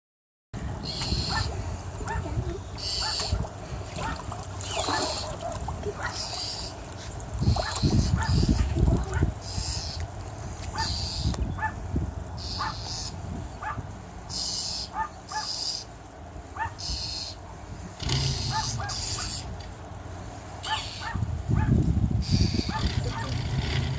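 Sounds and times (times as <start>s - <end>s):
bird rasping scold calls: 0.8s - 3.4s, 4.0s - 5.4s, 6.0s - 6.8s, 9.4s - 10.0s, 10.7s - 11.8s, 12.4s - 16.0s, 16.6s - 19.7s, 20.6s - 21.2s, 22.2s - 23.9s.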